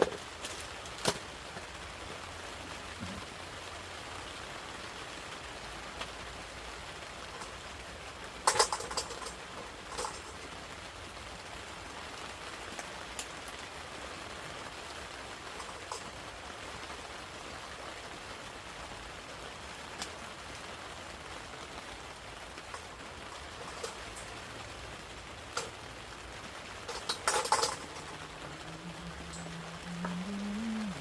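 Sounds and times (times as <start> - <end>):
steady rain falling: 0.0 - 31.0
drips ticking: 26.8 - 31.0.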